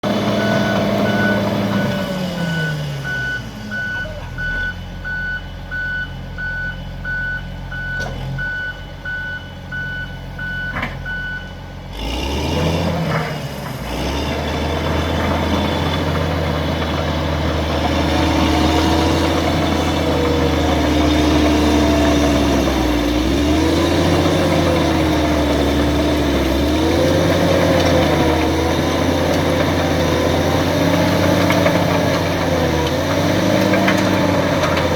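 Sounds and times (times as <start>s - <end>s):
bulldozer diesel engine: 0.0s - 34.9s
reversing alarm beeping: 0.2s - 11.6s.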